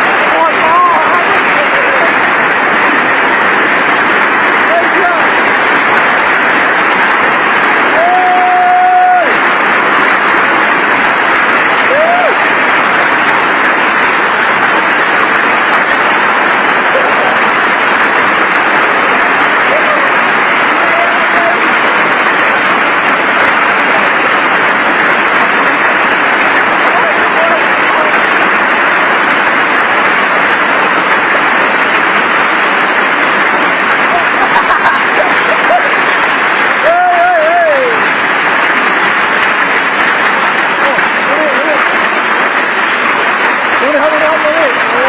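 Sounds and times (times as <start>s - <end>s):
hail and heavy rain falling: 0.0s - 45.0s.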